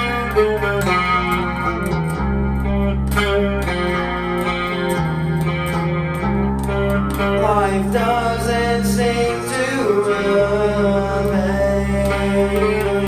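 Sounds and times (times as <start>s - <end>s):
clean electric guitar: 0.0s - 13.0s
steady low bass: 0.0s - 13.0s
percussive clicks: 11.2s - 13.0s.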